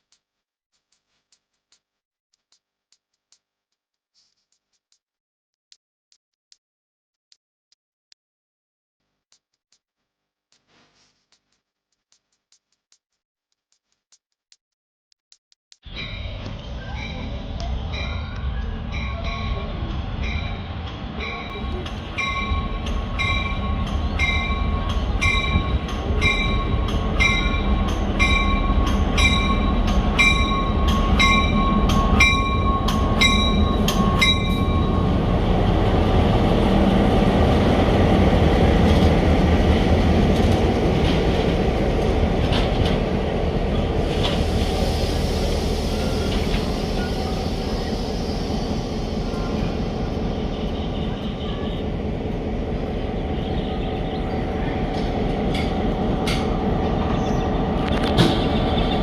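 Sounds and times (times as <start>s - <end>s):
bell ringing: 15.9s - 35.4s
train rumbling on rails: 15.9s - 59.0s.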